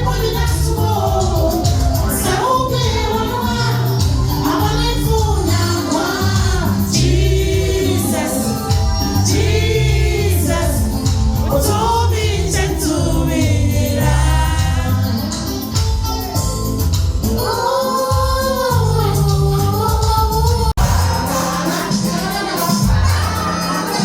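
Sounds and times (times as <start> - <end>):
voices singing together: 0.0 - 15.8, 17.2 - 24.0
band with bass line: 0.0 - 24.0.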